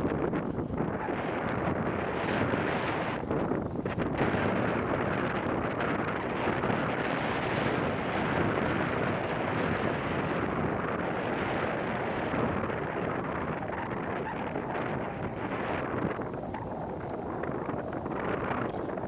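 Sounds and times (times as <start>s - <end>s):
wind blowing across microphone: 0.0s - 19.0s.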